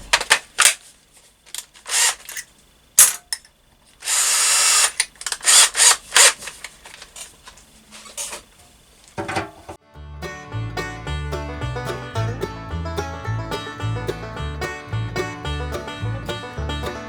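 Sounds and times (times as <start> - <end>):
electric drill cutting metal: 1.8 - 2.4, 4.0 - 6.5.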